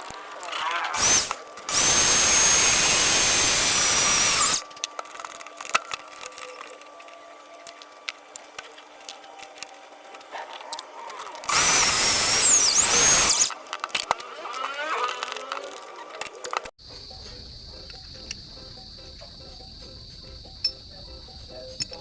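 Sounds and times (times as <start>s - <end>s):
electric drill whining: 0.8s - 4.6s, 11.5s - 13.6s.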